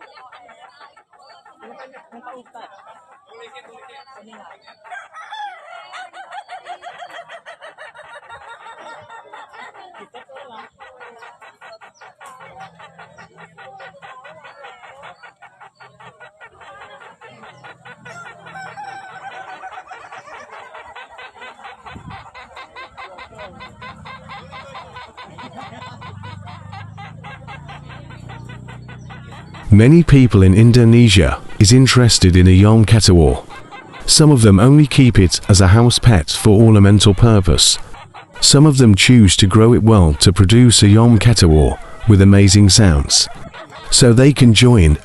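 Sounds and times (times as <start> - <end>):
chicken crowing in staccato notes: 4.7 - 7.6, 15.3 - 21.8.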